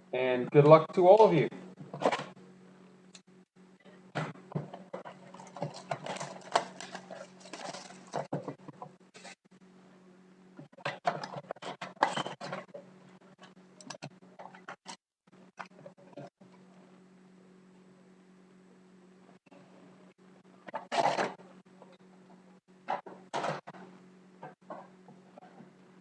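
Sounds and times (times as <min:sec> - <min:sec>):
steady low hum: 0:00.0 - 0:26.0
packaging crinkling and rustling: 0:05.0 - 0:08.6.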